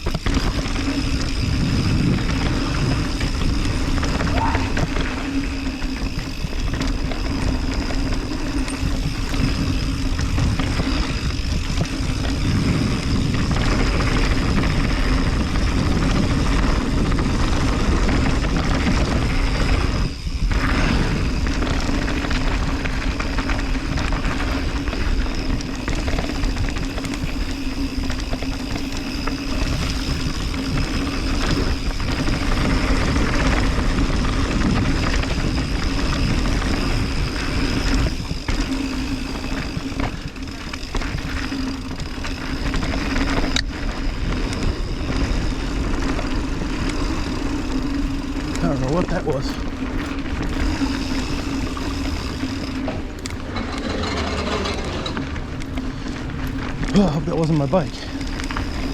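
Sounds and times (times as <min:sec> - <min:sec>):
bike tyres rumbling on dirt trail: 0:00.0 - 0:58.9
wind rush: 0:01.3 - 0:24.7.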